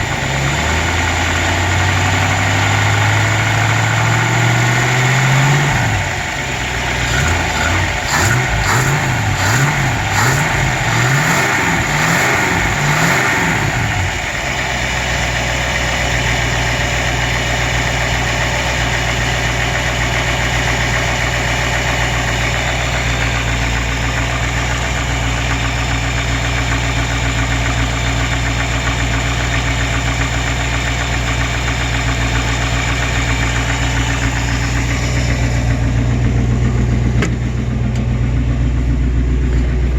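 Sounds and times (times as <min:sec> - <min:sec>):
car engine revving and idling: 0:00.0 - 0:39.9
engine knocking: 0:00.0 - 0:39.9.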